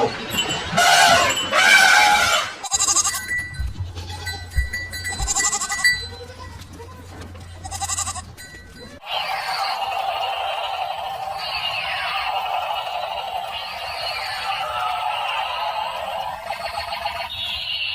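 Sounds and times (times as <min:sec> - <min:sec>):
goats bleating: 0:00.8 - 0:08.4
low steady hum: 0:02.7 - 0:09.0.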